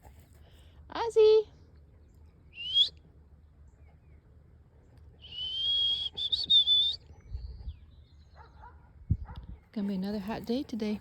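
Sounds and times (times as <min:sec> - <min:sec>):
person whistling: 0:05.2 - 0:07.0.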